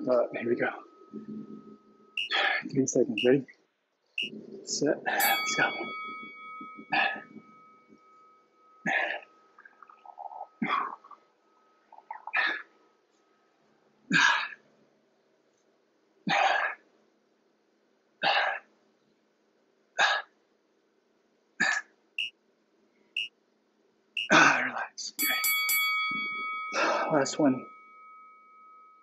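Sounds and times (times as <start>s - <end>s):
soft in-breaths: 6.8s - 7.5s, 12.2s - 12.7s.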